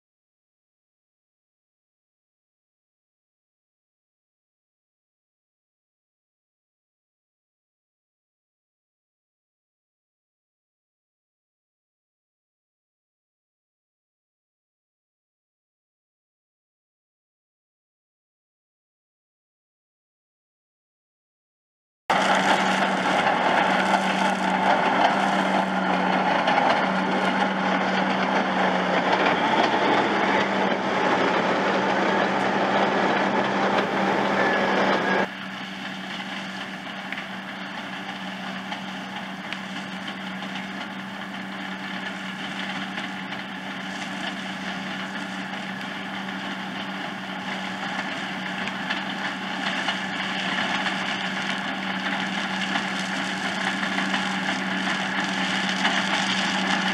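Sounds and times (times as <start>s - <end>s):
harvester machinery clattering: 22.1s - 56.9s
tractor diesel engine: 22.1s - 56.9s.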